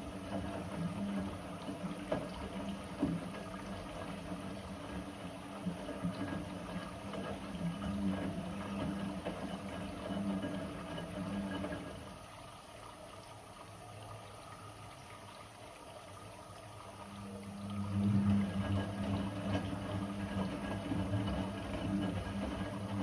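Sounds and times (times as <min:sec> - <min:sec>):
washing machine motor hum: 0:00.0 - 0:23.0.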